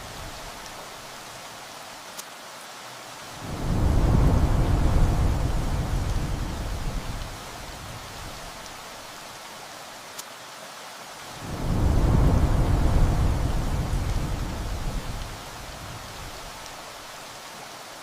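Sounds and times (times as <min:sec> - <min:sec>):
steady rain: 0:00.0 - 0:18.0
thunder rumbling: 0:03.4 - 0:08.8, 0:11.4 - 0:16.8.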